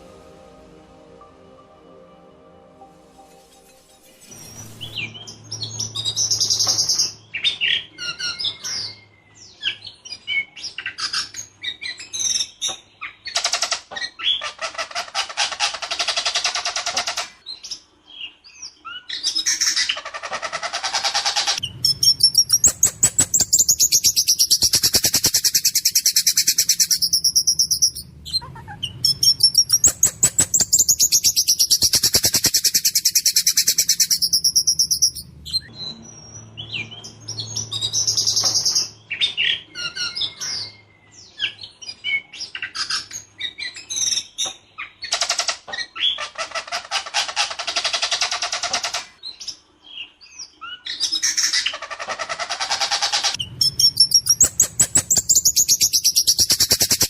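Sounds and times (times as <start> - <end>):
songbird singing: 0.0 - 13.5, 21.4 - 45.2, 53.3 - 57.0
harsh rattling bird trill: 19.5 - 35.7, 51.3 - 57.0.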